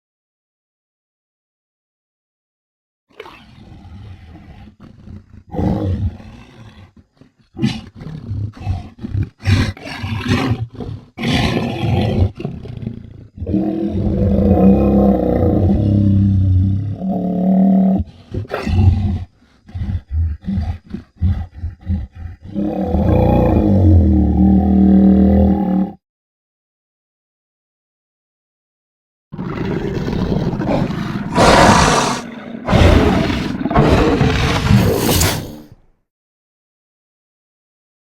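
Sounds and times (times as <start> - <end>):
deep monster roar: 13.4 - 18.0, 22.4 - 26.0, 29.4 - 35.7
monster vocal bursts: 31.3 - 35.7.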